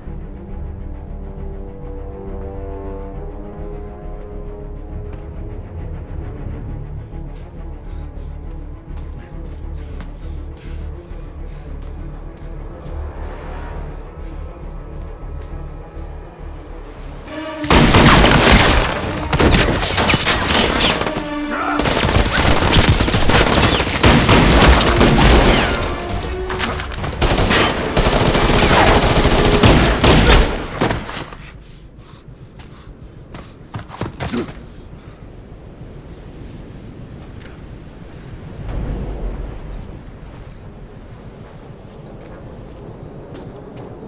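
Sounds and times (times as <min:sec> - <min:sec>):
music: 0:00.0 - 0:31.2
automatic gunfire: 0:21.8 - 0:31.2.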